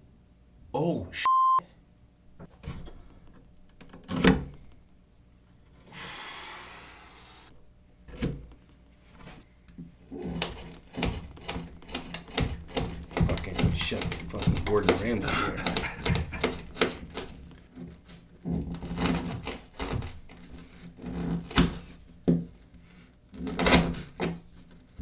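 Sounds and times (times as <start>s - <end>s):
short beep: 1.2s - 1.6s
knocks: 10.2s - 17.6s, 18.6s - 20.8s
knife rasping cut: 10.2s - 21.9s.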